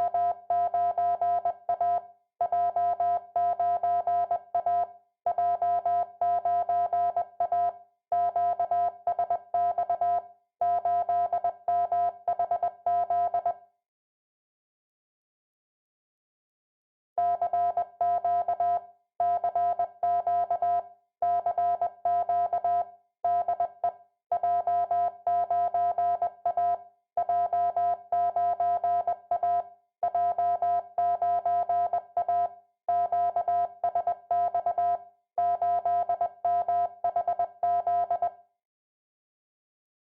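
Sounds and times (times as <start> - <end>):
morse code beeps: 17.2 - 38.3.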